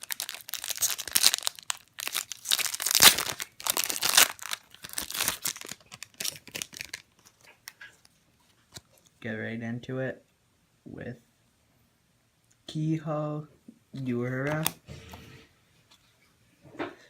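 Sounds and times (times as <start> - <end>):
wrapper tearing and crinkling: 0.0 - 7.8.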